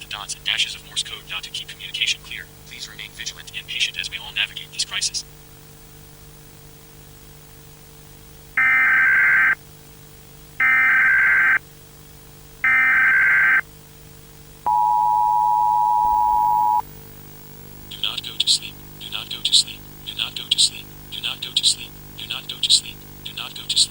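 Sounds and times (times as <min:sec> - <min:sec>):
faint low hum: 0:00.0 - 0:23.9
buzzy digital data tones: 0:14.7 - 0:16.8
two-tone alert signal: 0:14.7 - 0:16.8.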